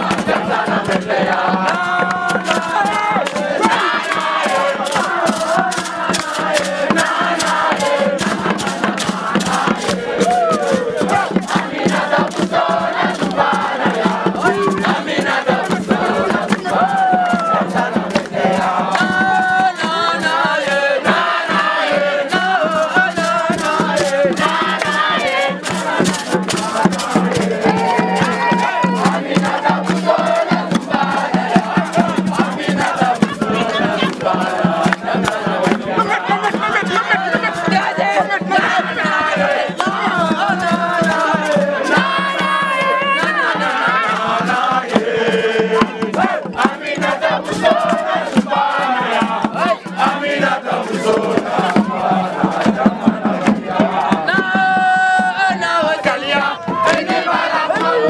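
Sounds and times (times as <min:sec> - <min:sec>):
group of voices chanting: 0:00.0 - 0:58.0
sharp percussive hits: 0:00.0 - 0:58.0.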